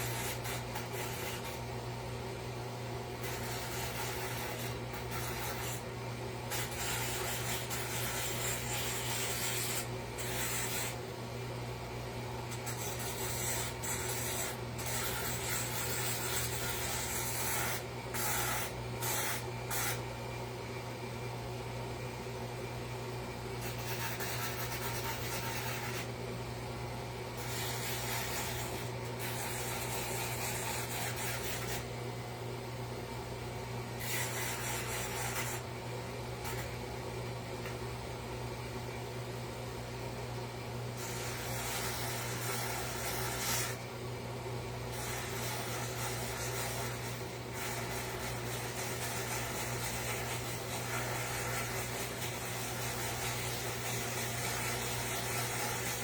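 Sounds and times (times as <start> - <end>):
abrasive tool scraping wood: 23.6 - 26.1, 27.4 - 31.9, 34.0 - 35.6.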